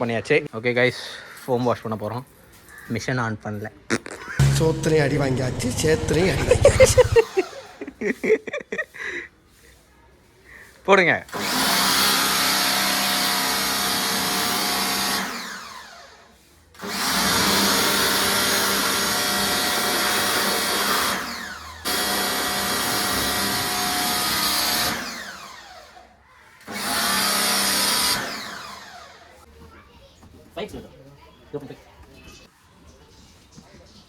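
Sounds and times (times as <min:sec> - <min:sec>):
pressure washer running: 0:04.4 - 0:07.7, 0:11.4 - 0:15.7, 0:16.8 - 0:25.4, 0:26.8 - 0:29.0
motor spinning down whine: 0:04.4 - 0:07.8.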